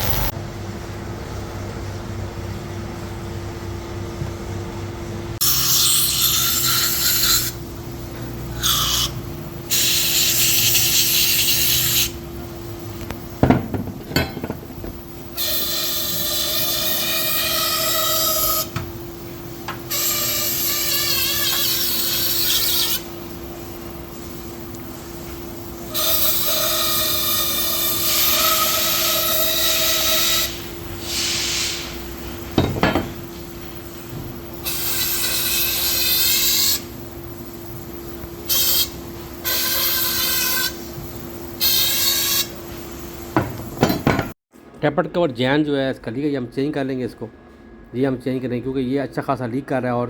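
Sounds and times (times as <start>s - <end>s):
spray nozzle hissing: 9.7s - 12.1s.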